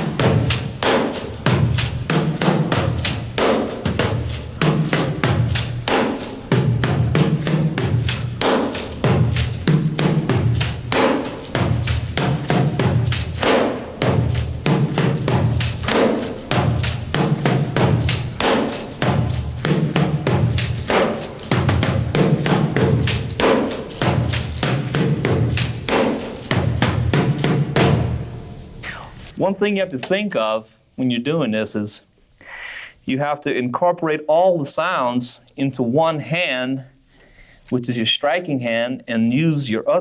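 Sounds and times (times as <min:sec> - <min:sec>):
tambourine jingles ringing: 0:00.0 - 0:28.2
tambourine drum head thumps: 0:00.0 - 0:28.5.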